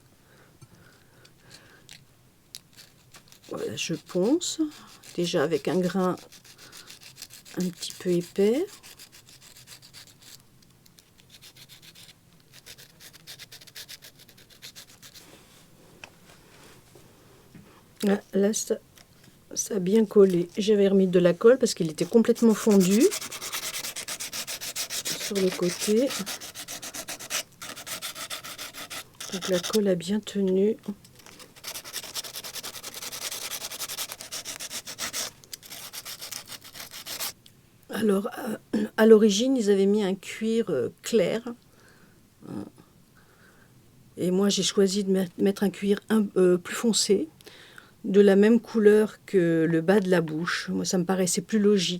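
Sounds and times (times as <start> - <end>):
sandpaper scratching: 2.7 - 10.4, 11.2 - 15.2, 21.9 - 30.0, 31.2 - 37.4.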